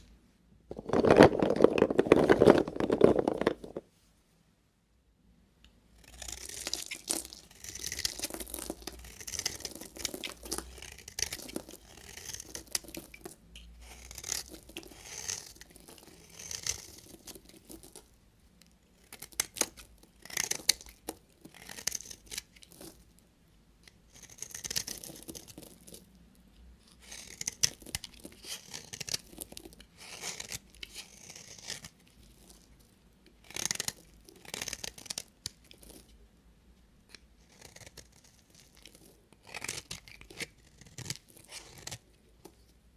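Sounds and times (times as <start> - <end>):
knife cutting through soap: 6.0 - 18.0, 26.8 - 32.7, 33.4 - 36.1, 37.1 - 42.5.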